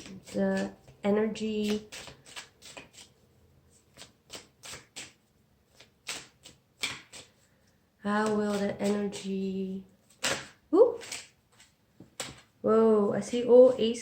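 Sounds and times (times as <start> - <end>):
person speaking: 0.0 - 2.0, 8.0 - 9.9, 10.7 - 11.1, 12.6 - 14.0
cards being shuffled: 0.0 - 7.5, 8.1 - 9.4, 10.0 - 12.5.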